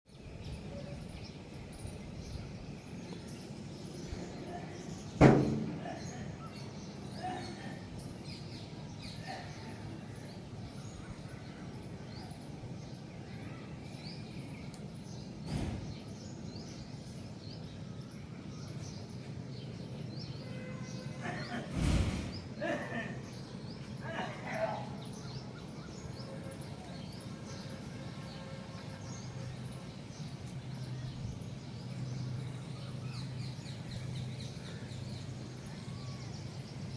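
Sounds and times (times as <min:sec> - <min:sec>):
low rumble of outdoor noise: 0:00.1 - 0:36.9
small birds chirping: 0:00.1 - 0:36.9.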